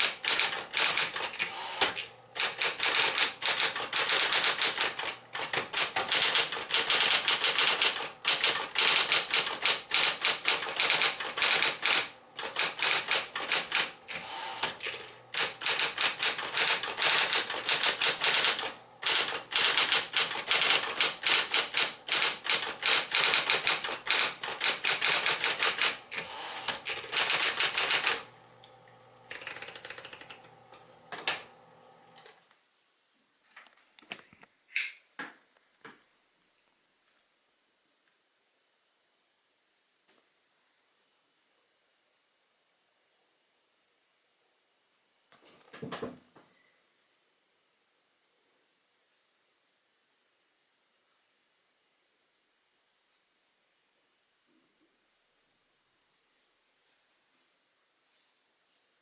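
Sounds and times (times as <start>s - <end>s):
typewriter keystrokes: 0.0s - 28.3s, 29.3s - 30.4s, 31.2s - 31.5s
typewriter motor hum: 0.0s - 28.5s, 29.2s - 32.3s.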